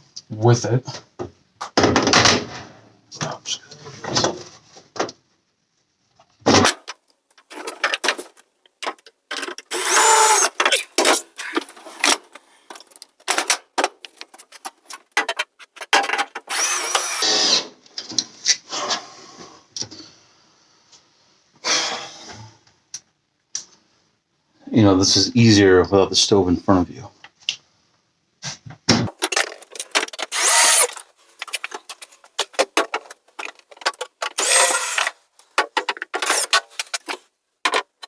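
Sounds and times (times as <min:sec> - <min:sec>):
handling knocks and clicks: 0:06.5 - 0:17.2, 0:29.1 - 0:38.0
power drill driving screws: 0:06.7 - 0:13.6, 0:15.2 - 0:17.2, 0:29.1 - 0:37.9.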